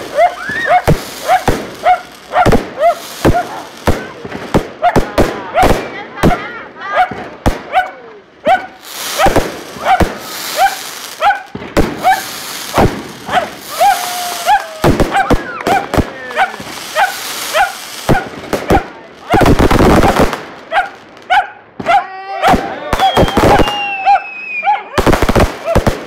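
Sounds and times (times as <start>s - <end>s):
fireworks banging: 0.0s - 24.0s, 25.0s - 26.0s
dog barking: 0.2s - 3.7s, 6.9s - 12.3s, 13.3s - 13.9s, 15.1s - 18.8s, 20.7s - 22.6s.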